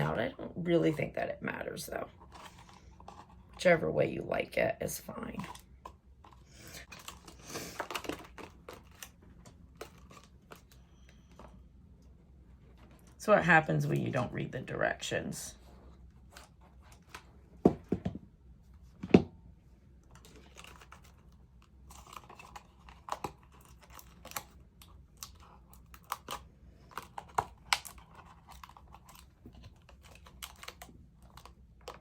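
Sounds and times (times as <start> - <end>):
cardstock clicks and crinkles: 5.4 - 11.6, 20.0 - 32.0.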